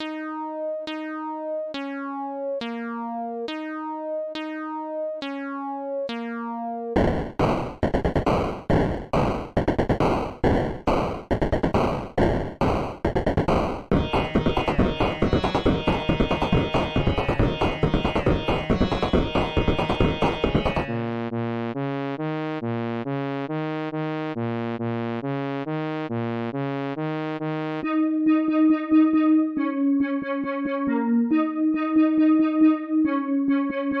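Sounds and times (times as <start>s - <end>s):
stepping bass line: 0.0s - 28.1s
synthesizer notes: 0.0s - 34.0s
sharp clicks: 7.0s - 20.9s
choppy bursts of harsh noise: 12.6s - 20.9s.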